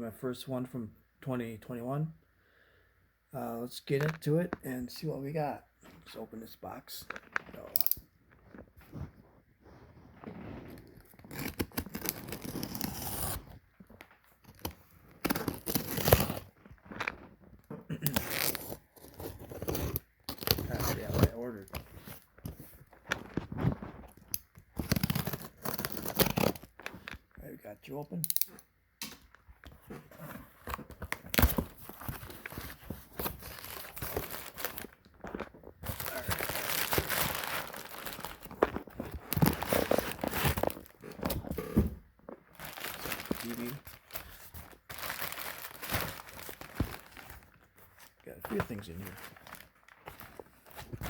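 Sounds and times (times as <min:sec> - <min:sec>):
packing material crinkling with clicks: 0:10.1 - 0:27.4, 0:28.1 - 0:41.6, 0:42.4 - 0:51.0
cardboard box tearing and rustling: 0:10.4 - 0:13.6, 0:14.5 - 0:16.6, 0:18.2 - 0:22.3, 0:24.8 - 0:26.7, 0:30.0 - 0:35.0, 0:35.8 - 0:41.7, 0:42.6 - 0:47.6, 0:48.7 - 0:51.0
packing tape ripping: 0:10.8 - 0:13.5, 0:14.5 - 0:16.6, 0:18.0 - 0:21.8, 0:24.1 - 0:26.8, 0:35.9 - 0:41.1.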